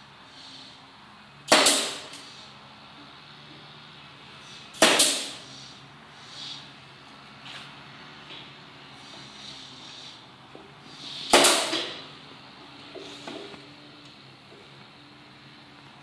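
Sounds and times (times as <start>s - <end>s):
nail gun firing into wood: 1.5s - 2.2s, 4.8s - 5.4s, 11.3s - 12.0s.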